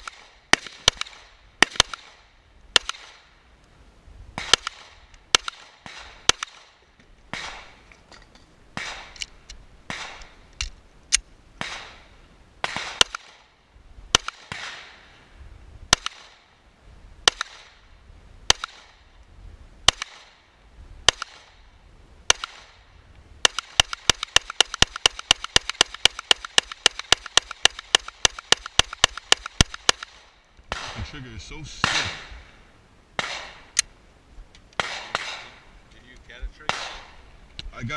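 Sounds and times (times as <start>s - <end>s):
rapid gunfire: 23.4s - 31.1s
gunshots with echo: 23.4s - 31.2s, 31.8s - 32.3s.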